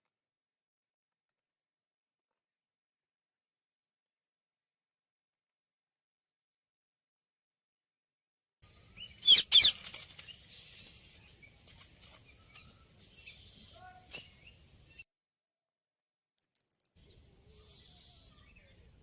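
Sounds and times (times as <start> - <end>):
parrot screeching: 9.2 - 9.8.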